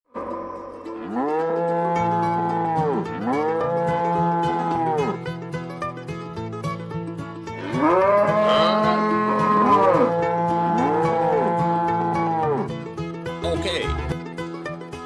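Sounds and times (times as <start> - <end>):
cow mooing: 0.8 - 5.3, 7.6 - 12.7.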